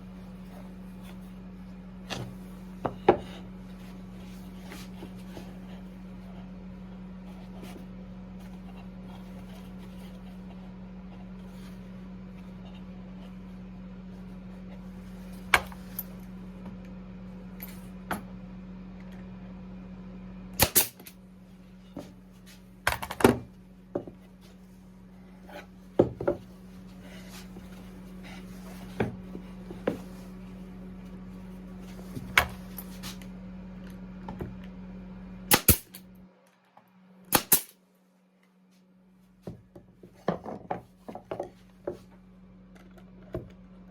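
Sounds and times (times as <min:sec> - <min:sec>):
steady low hum: 0:00.0 - 0:43.9
wooden parts and tools knocking: 0:39.5 - 0:42.0.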